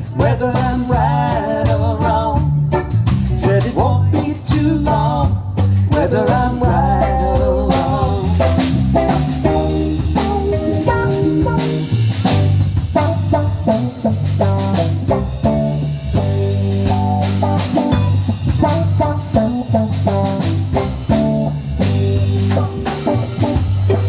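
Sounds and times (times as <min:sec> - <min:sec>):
bass line: 0:00.0 - 0:24.0
drum kit beat: 0:00.0 - 0:24.0
electric guitar notes: 0:06.7 - 0:24.0.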